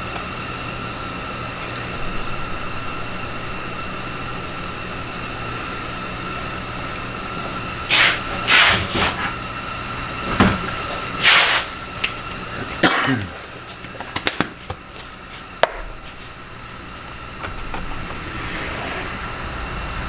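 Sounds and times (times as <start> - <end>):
compressed air hiss: 7.6 - 12.9
machine hum with faint whine: 12.0 - 20.0.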